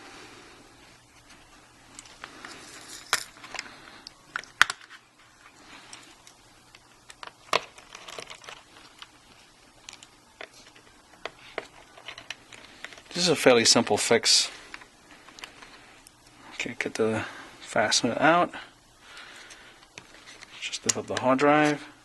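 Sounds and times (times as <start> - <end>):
rustling: 0.8 - 4.1.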